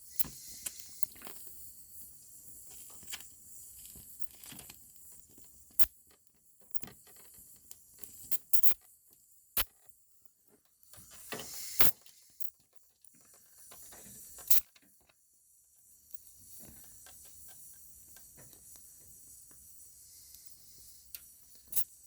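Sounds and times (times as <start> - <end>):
welding torch hissing: 0.0 - 1.9, 11.0 - 12.5, 17.2 - 22.0.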